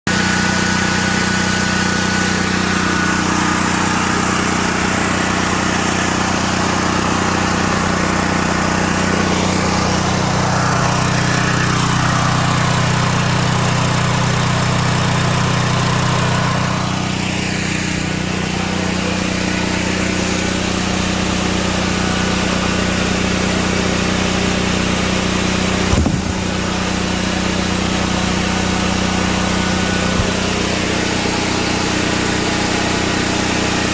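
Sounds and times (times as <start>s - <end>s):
small generator engine running: 0.1s - 33.9s
short knock: 25.9s - 26.4s.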